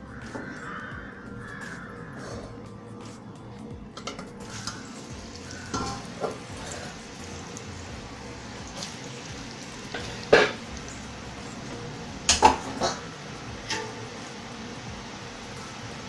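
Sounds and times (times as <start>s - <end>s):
food sizzling in hot oil: 3.9s - 16.0s
utensil clinking: 4.0s - 14.4s.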